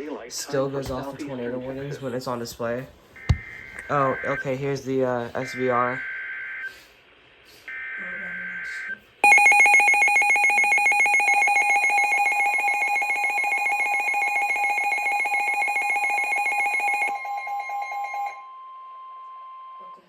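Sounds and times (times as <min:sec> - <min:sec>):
shrill pulsing electronic alarm tone: 0:03.2 - 0:04.7, 0:05.4 - 0:06.8, 0:07.7 - 0:19.6.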